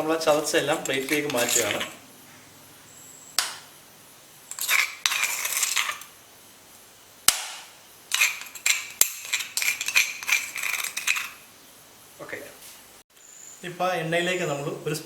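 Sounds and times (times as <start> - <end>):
utensil scraping a plate: 0.3 - 2.0, 4.5 - 6.1, 8.1 - 11.4
sharp knock: 7.3 - 7.7.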